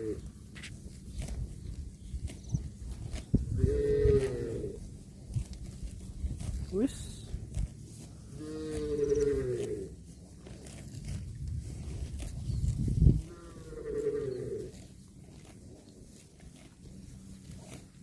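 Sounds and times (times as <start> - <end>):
calf mooing: 3.5 - 4.8, 8.3 - 9.9, 13.2 - 14.9.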